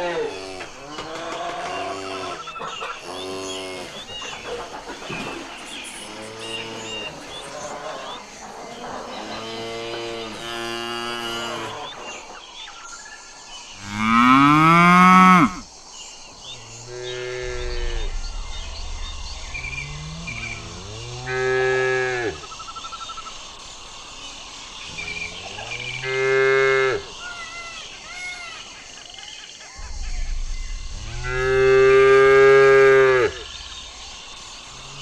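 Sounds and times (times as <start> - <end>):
cattle mooing: 0.0 - 4.1, 8.8 - 12.0, 13.8 - 15.6.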